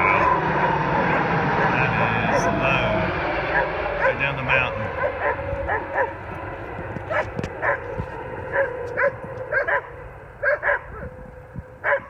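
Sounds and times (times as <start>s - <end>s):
plane drone: 0.0s - 12.0s
dog yapping: 5.0s - 6.2s, 7.1s - 7.9s, 8.5s - 11.1s.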